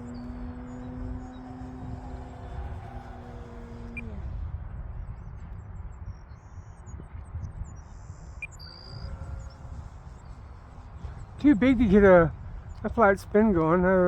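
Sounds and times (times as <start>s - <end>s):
model airplane motor droning: 0.0s - 6.1s, 6.9s - 14.0s
birds chirping: 0.0s - 14.0s
wind on microphone: 0.0s - 14.0s.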